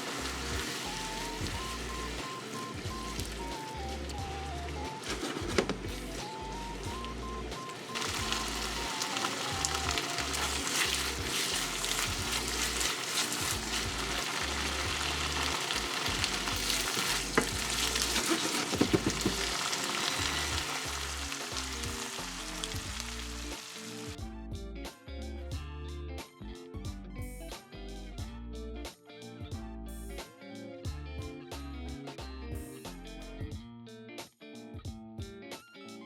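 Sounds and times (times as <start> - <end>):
meat sizzling in a frying pan: 0.0 - 7.0, 7.6 - 24.2
background music: 0.0 - 36.0
stirring clicks: 7.7 - 23.6.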